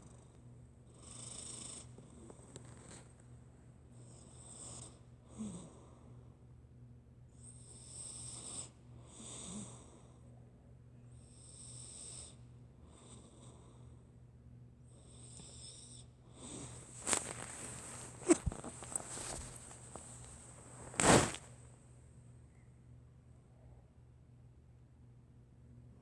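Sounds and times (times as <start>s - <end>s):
cat snoring softly: 0.0s - 3.0s, 15.0s - 21.4s.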